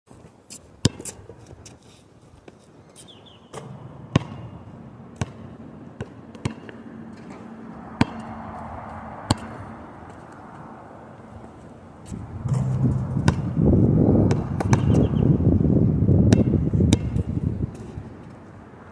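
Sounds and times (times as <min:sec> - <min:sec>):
basketball bouncing: 0:03.6 - 0:08.6, 0:09.3 - 0:09.7, 0:12.4 - 0:15.4, 0:16.2 - 0:17.4
steady background rush: 0:03.6 - 0:15.7.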